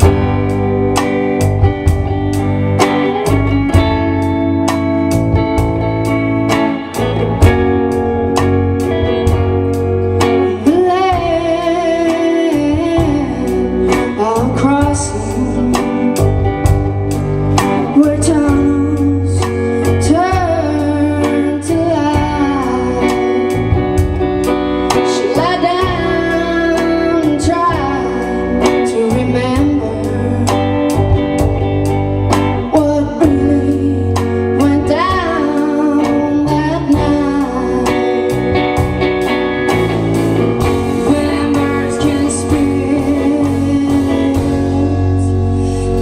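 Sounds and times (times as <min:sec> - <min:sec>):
bass guitar: 0:00.0 - 0:46.0
drums keeping a steady beat: 0:00.0 - 0:46.0
guitar: 0:00.0 - 0:46.0
woman singing: 0:08.4 - 0:16.8, 0:17.5 - 0:31.5, 0:32.3 - 0:38.9, 0:40.6 - 0:46.0.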